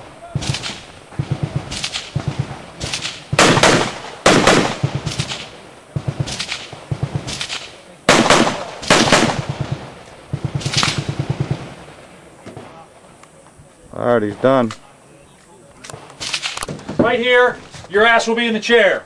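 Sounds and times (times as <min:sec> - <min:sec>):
rifle shots: 0:00.0 - 0:11.9.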